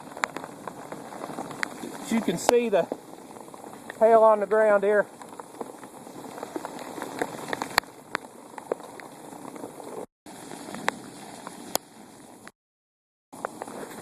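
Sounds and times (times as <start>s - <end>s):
hail pattering: 0.0s - 11.8s
hailstones clicking: 0.0s - 11.8s.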